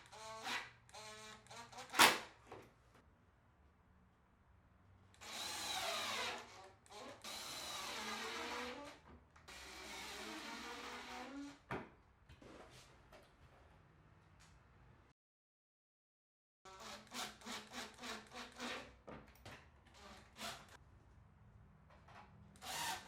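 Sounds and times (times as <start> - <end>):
power drill running: 5.2 - 8.9, 9.5 - 11.2, 22.6 - 23.0.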